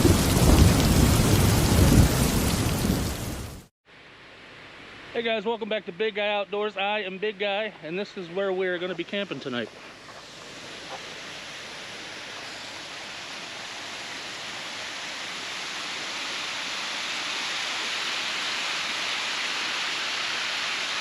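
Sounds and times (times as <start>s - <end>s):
waterfall rushing: 9.4s - 21.0s.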